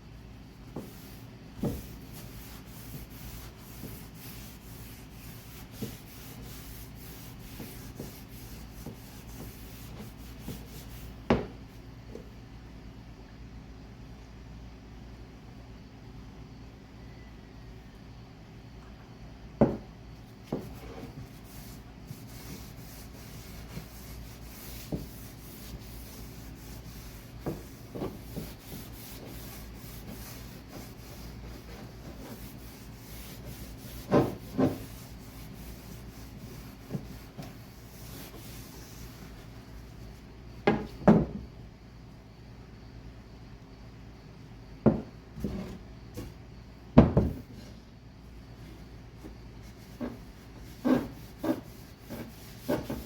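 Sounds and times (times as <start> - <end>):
rubbing on wood: 0.7 - 11.1, 20.5 - 39.4, 49.6 - 53.0.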